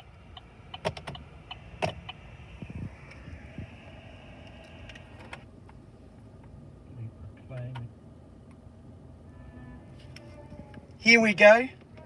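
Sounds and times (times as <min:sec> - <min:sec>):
car cabin hum: 0:00.0 - 0:12.0.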